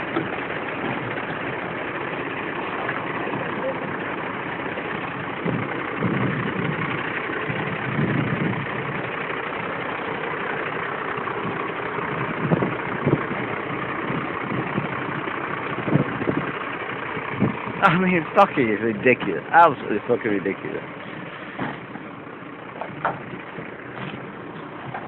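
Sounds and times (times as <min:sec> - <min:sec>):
engine idling: 0:00.0 - 0:25.0.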